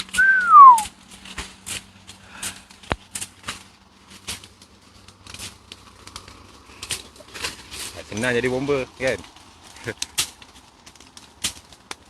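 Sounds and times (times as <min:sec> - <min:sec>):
dry brush crackling: 0:00.0 - 0:12.0
short falling whistle: 0:00.2 - 0:00.9.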